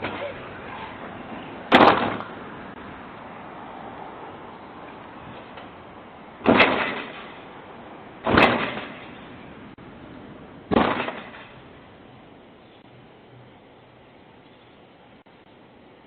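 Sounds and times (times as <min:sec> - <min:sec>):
sudden loud bangs: 0:01.7 - 0:02.2, 0:06.4 - 0:07.3, 0:08.2 - 0:09.1, 0:10.7 - 0:11.6.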